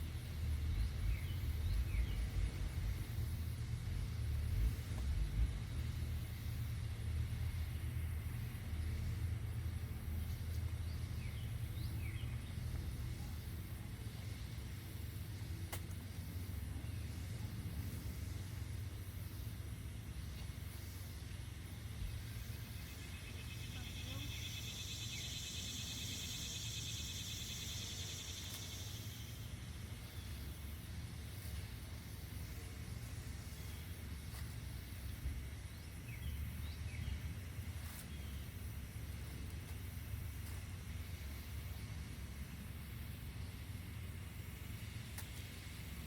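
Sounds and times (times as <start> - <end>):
low rumble: 0.0 - 15.2
insects chorus pulsing: 0.0 - 46.0.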